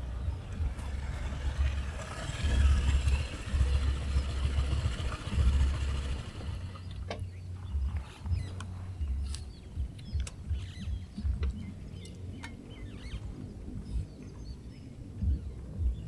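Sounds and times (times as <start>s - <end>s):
wind buffeting microphone: 0.0s - 16.0s.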